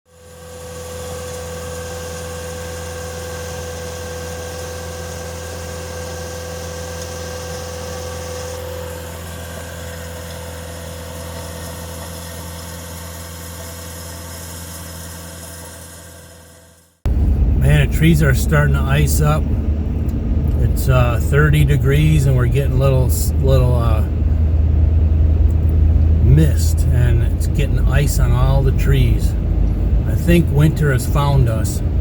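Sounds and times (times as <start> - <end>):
engine idling: 17.1 - 32.0.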